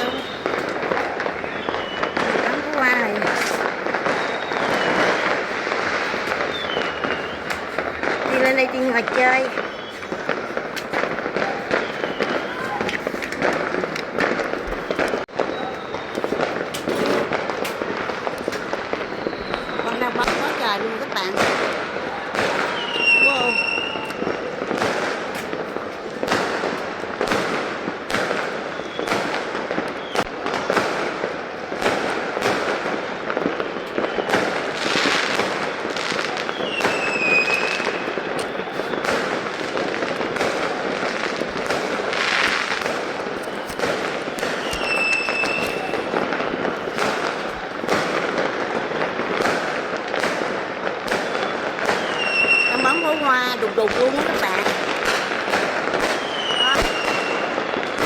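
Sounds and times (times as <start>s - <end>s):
fireworks crackling and banging: 0.0s - 58.0s.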